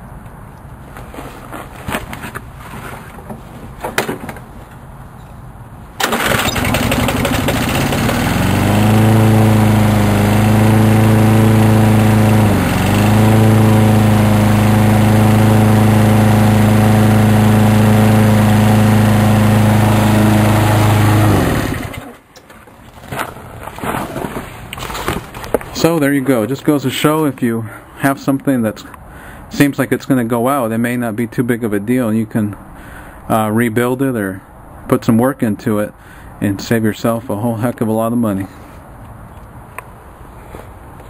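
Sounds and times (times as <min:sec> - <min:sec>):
lawn mower engine running: 0:06.0 - 0:22.2.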